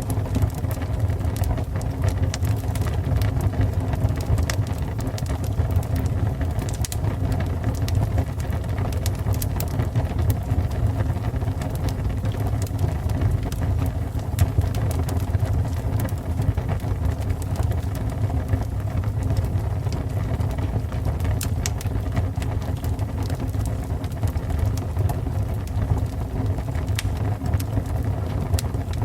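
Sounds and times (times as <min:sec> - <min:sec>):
fire crackling and popping: 0:00.0 - 0:29.0.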